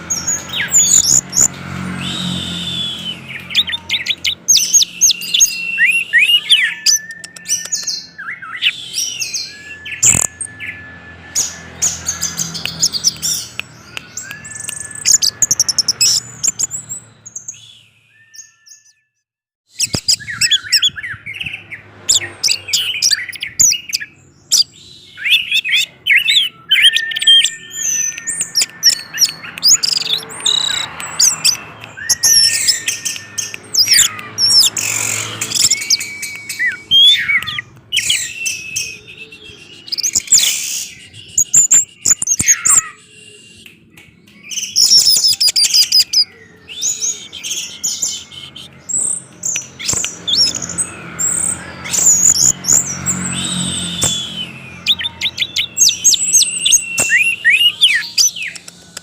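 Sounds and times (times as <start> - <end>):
thrush singing: 20.2 - 59.0.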